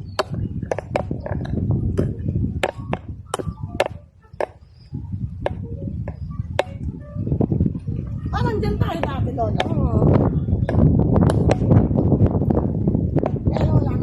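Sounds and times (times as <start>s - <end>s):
strong wind buffeting microphone: 0.0s - 14.0s.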